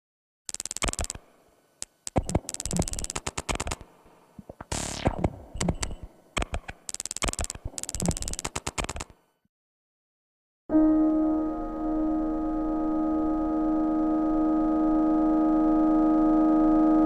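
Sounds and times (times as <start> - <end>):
stuttering drum machine hits: 4.5 - 8.9.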